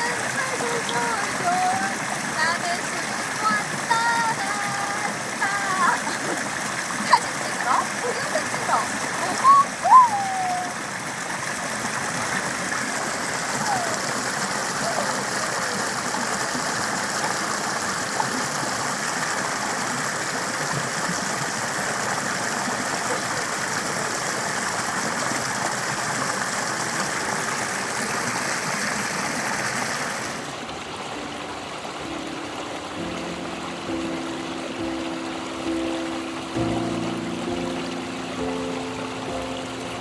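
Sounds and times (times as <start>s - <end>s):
stream rushing over rocks: 0.0s - 40.0s
faint music notes: 30.5s - 40.0s.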